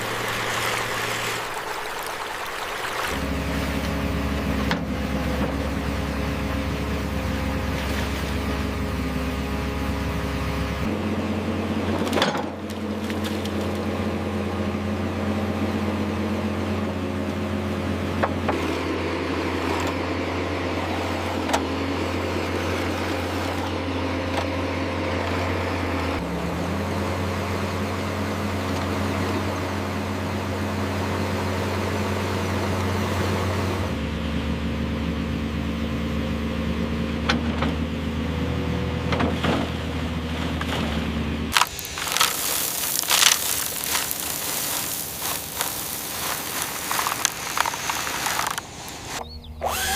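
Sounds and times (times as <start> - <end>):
hydraulic machine motor humming: 41.4 - 49.9.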